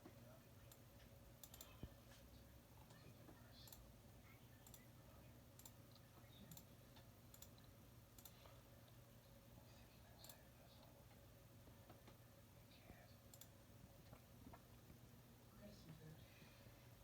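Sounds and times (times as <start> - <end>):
low steady hum: 0.0 - 17.0
computer mouse clicks: 1.4 - 2.0, 2.8 - 3.8, 4.6 - 4.9, 5.6 - 9.0, 10.2 - 10.9, 13.3 - 14.6.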